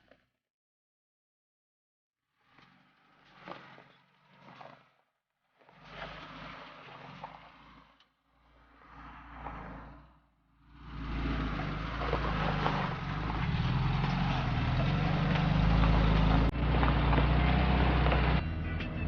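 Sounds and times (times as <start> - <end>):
off-road vehicle engine running: 10.6 - 19.0.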